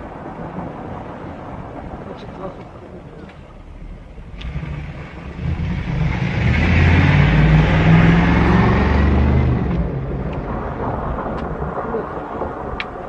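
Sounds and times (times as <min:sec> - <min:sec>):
motor vehicle passing close by: 0:04.4 - 0:12.7.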